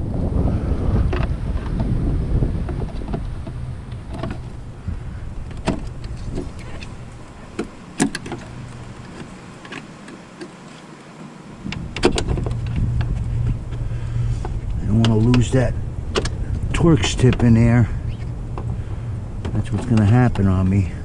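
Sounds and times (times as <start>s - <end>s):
wind rumble on microphone: 0.0s - 9.6s, 11.6s - 21.0s
hand tools clicking and tapping: 5.4s - 10.9s.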